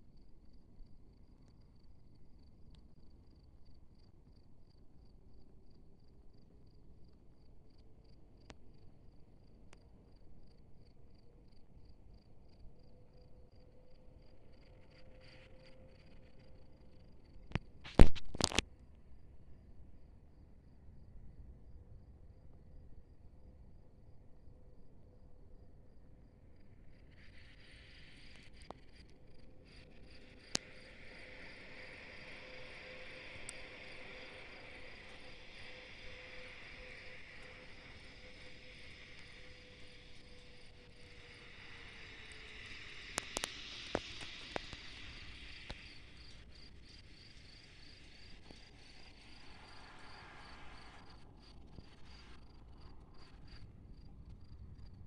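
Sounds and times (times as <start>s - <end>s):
insects chirping: 10.5s - 18.6s, 26.0s - 55.0s
sharp clicks: 17.5s - 18.6s, 41.7s - 46.4s
hiss: 26.9s - 53.7s.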